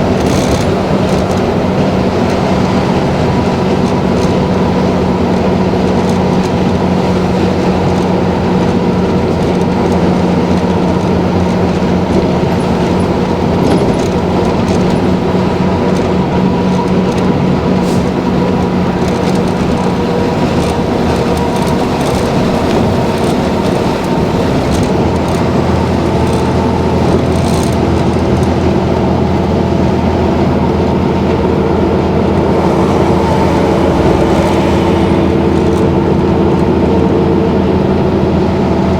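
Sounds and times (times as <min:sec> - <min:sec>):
bus diesel engine droning: 0:00.0 - 0:38.9
engine whine: 0:00.0 - 0:38.9.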